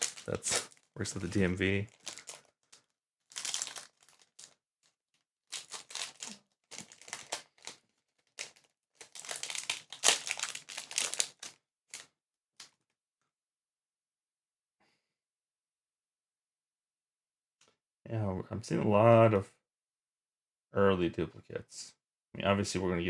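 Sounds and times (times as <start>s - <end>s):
foil wrapper crinkling: 0.0s - 4.6s, 5.5s - 12.1s.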